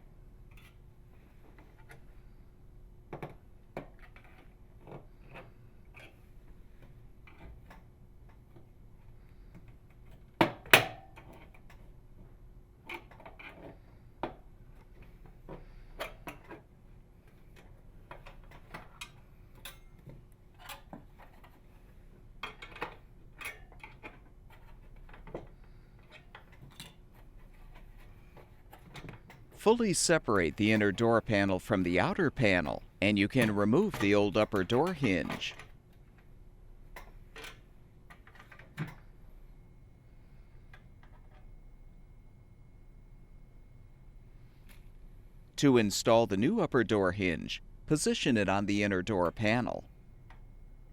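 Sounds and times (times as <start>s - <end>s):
tools clicking and scraping on plastic: 3.1s - 6.2s, 12.9s - 16.7s, 22.4s - 29.6s.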